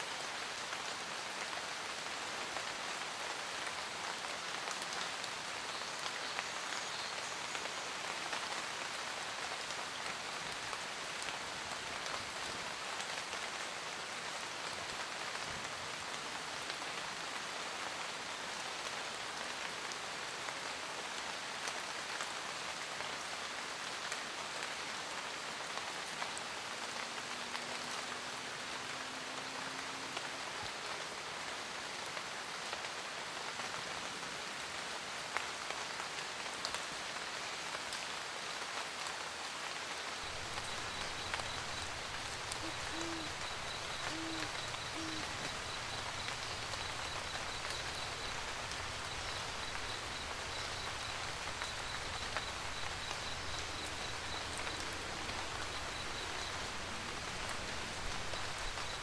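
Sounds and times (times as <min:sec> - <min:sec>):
rain pattering: 0:00.0 - 0:59.0
owl hooting: 0:40.2 - 0:59.0.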